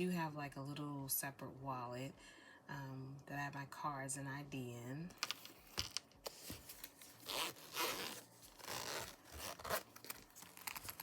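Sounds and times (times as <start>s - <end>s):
zipper being pulled: 7.1s - 11.0s.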